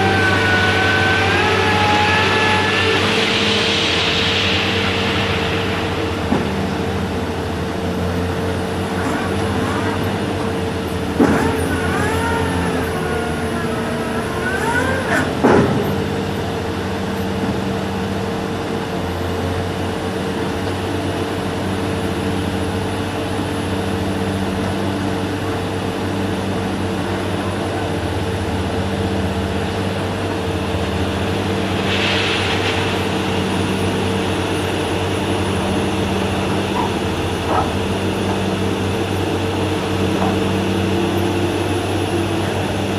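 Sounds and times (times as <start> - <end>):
short hiss: 31.4 - 35.3.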